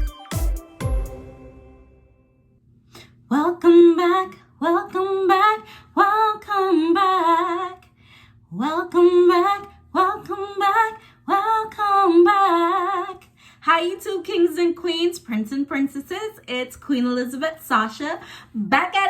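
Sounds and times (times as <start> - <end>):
woman singing unaccompanied: 3.3 - 7.9, 8.5 - 19.0.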